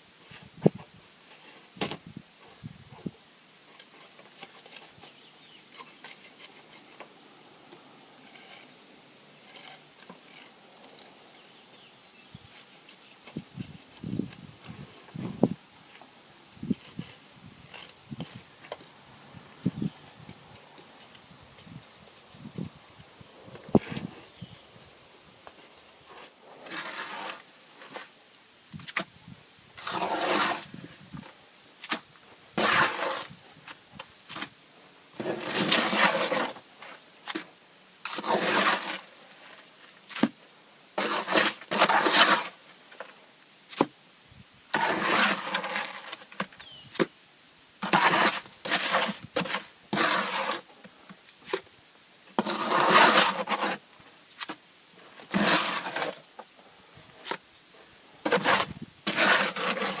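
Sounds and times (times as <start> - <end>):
shovel scraping and scooping: 26.0 - 28.2, 29.8 - 40.4, 41.0 - 43.1, 44.7 - 47.1, 47.8 - 50.7, 52.3 - 53.8, 54.4 - 56.3, 57.2 - 57.4, 58.2 - 60.0.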